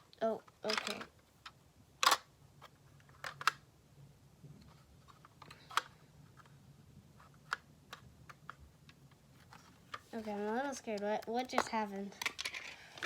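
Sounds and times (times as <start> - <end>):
plastic pieces clicking and knocking: 0.5 - 2.3, 11.0 - 13.0.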